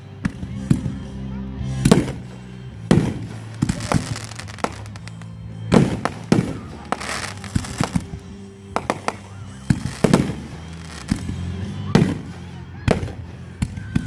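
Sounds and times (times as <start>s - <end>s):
music playing: 0.0s - 14.0s
fireworks bangs: 1.8s - 2.3s, 2.9s - 11.4s, 12.0s - 13.3s
fireworks crackling: 1.9s - 13.3s.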